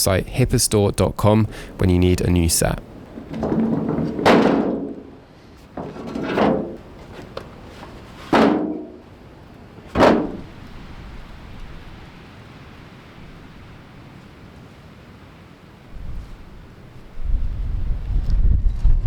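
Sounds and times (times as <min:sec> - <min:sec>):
low steady background noise: 0:00.0 - 0:17.4
hard ringing knocks: 0:03.1 - 0:05.2, 0:08.3 - 0:09.0.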